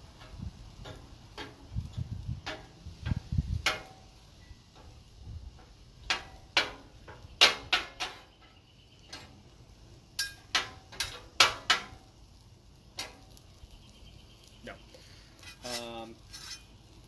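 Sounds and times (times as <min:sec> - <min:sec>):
metal spatulas clacking on griddle: 0:00.2 - 0:01.7, 0:02.4 - 0:04.0, 0:05.6 - 0:08.5, 0:10.2 - 0:12.0, 0:13.0 - 0:13.4, 0:15.4 - 0:16.7.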